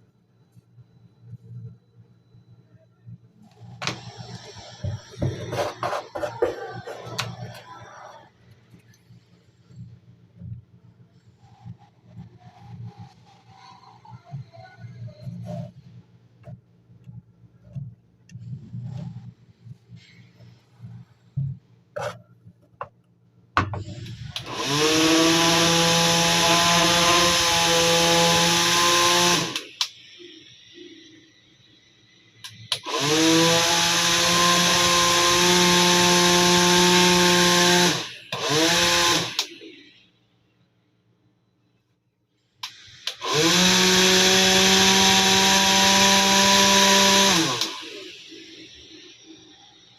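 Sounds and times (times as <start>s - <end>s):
small fan motor whining: 23.8s - 40.2s, 42.6s - 49.9s.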